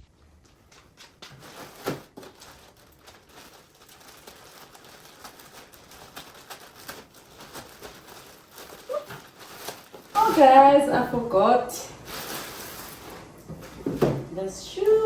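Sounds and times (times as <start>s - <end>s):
packaging crackling and tearing: 0.8s - 10.8s, 12.0s - 13.3s.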